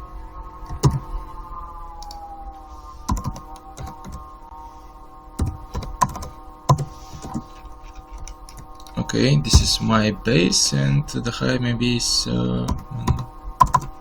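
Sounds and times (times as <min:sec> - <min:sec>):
drone of held tones: 0:00.0 - 0:14.0
keyboard and mouse clicks: 0:00.7 - 0:01.0, 0:02.0 - 0:02.2, 0:03.1 - 0:04.2, 0:05.4 - 0:09.7, 0:12.7 - 0:14.0.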